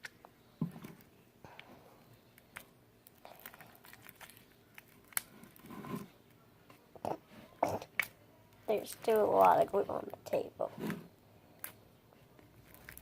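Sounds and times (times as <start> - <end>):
sticky slime squelching: 2.3 - 6.1, 12.4 - 13.0.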